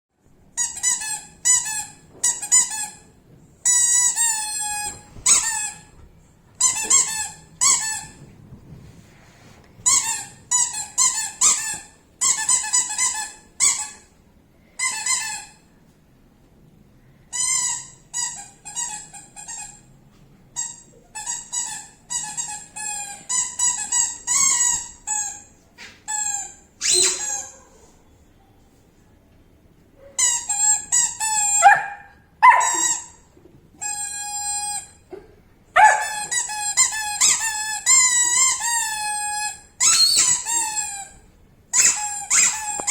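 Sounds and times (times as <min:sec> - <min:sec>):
squeaky dog toy: 0:00.6 - 0:05.9, 0:06.6 - 0:08.2, 0:09.8 - 0:14.1, 0:14.8 - 0:15.6, 0:17.3 - 0:19.9, 0:20.6 - 0:25.5, 0:26.1 - 0:27.9, 0:30.1 - 0:42.9.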